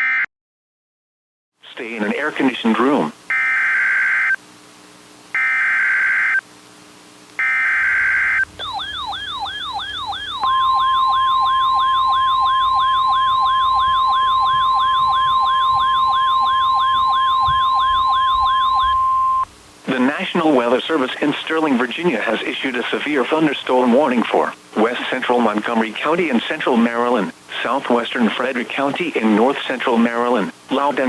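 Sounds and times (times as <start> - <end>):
steady alarm tone: 3.3 - 4.4, 5.3 - 6.4, 7.4 - 20.1
buzzing digital data screeches: 5.4 - 6.4, 7.4 - 19.5
warbling siren-like tone: 7.4 - 19.5.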